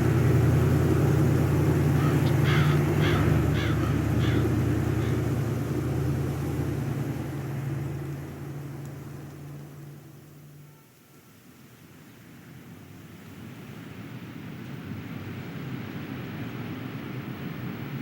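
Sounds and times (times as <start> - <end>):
crows cawing: 1.8 - 5.4.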